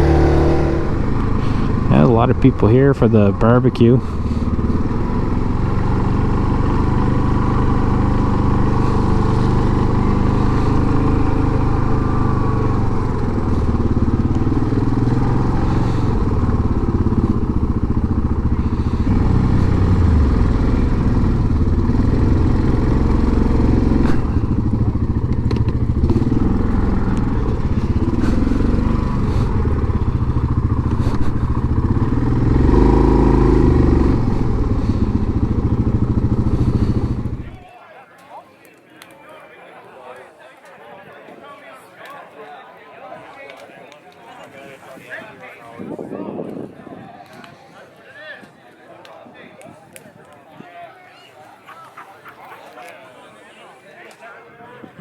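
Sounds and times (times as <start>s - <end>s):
quad bike engine running: 0.0s - 37.6s.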